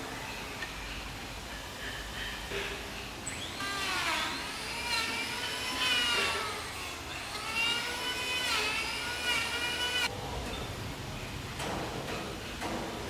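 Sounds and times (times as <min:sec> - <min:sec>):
power tool whining into wood: 0:03.3 - 0:10.1.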